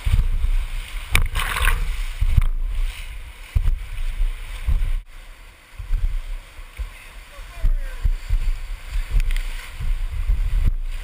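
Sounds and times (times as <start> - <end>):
sharp water splash: 0.0 - 5.1
low rumbling on microphone: 0.0 - 11.0
rushing river water: 0.0 - 11.0.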